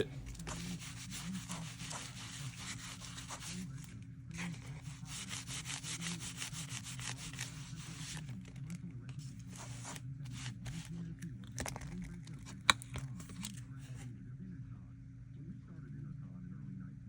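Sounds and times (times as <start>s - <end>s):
steady low hum: 0.0s - 17.0s
applicator rubbing on leather: 0.2s - 3.8s, 4.4s - 11.0s.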